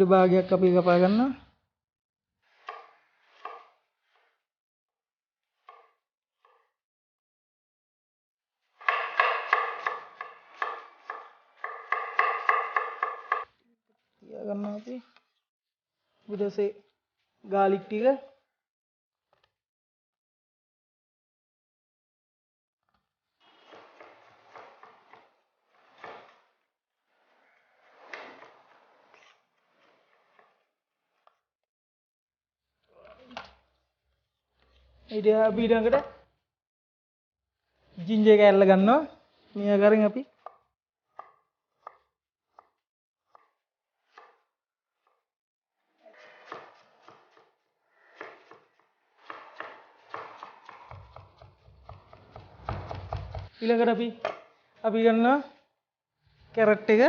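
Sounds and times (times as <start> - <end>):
knife scraping cutting board: 2.4 - 4.4, 23.3 - 31.4, 41.8 - 45.2, 46.0 - 53.6
knife tapping cutting board: 8.9 - 13.4, 49.3 - 53.5.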